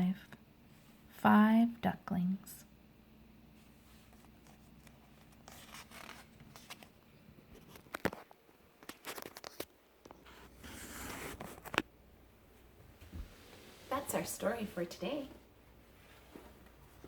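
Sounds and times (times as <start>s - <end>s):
paper pages rustling: 3.6s - 11.9s.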